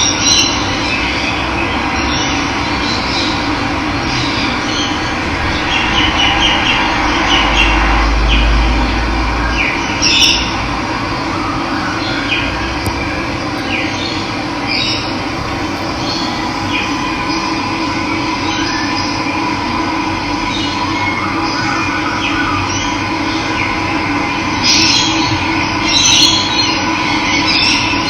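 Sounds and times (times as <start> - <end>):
low rumble: 1.3 - 11.6, 12.4 - 20.5
birds chirping: 11.9 - 19.2.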